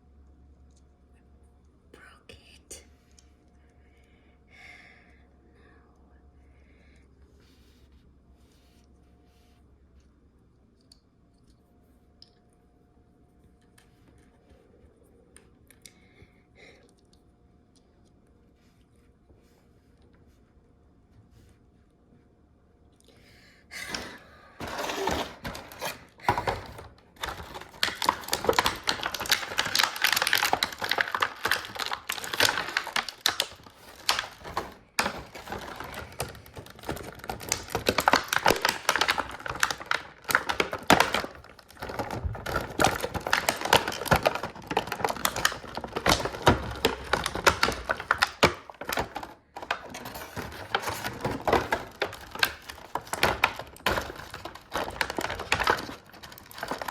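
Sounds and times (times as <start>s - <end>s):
plastic packaging crackling: 24.0s - 56.9s.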